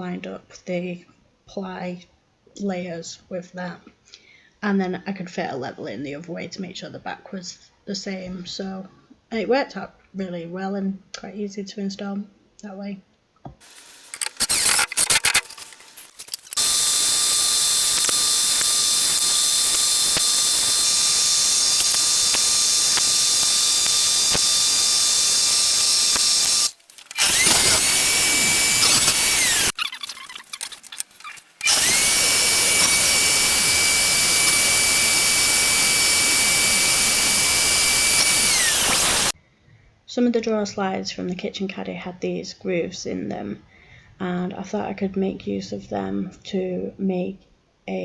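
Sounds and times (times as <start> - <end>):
power tool motor whining: 13.6 - 39.4.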